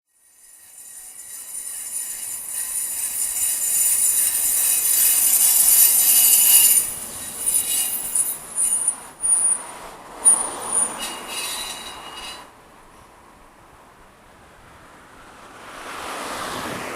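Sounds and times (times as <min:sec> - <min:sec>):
high-pitched car squealing: 0:00.2 - 0:12.5.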